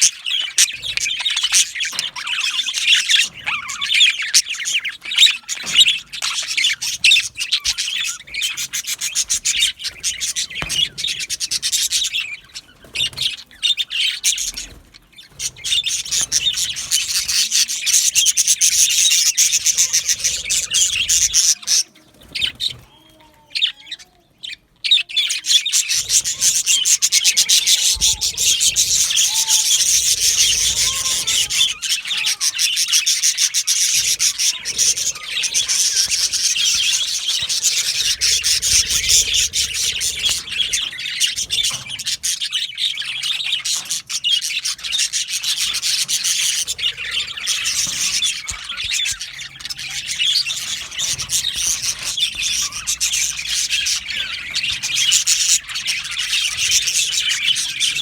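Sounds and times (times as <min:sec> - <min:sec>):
budgerigars chattering and chirping: 0:00.0 - 0:58.0.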